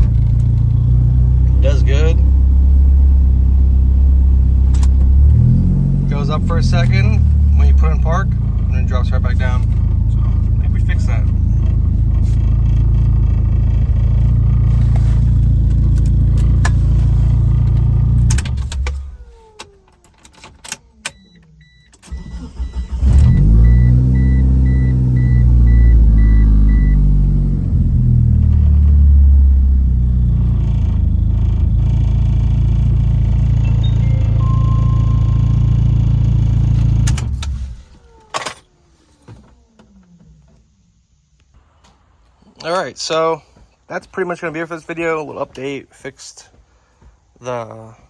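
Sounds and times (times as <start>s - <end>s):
car engine idling: 0.0s - 20.2s, 20.8s - 42.1s
engine cranking and restarting: 0.0s - 21.2s, 22.0s - 40.3s
engine winding down clicks: 4.6s - 40.7s
dashboard warning chime beeping: 21.1s - 27.1s, 33.6s - 36.2s.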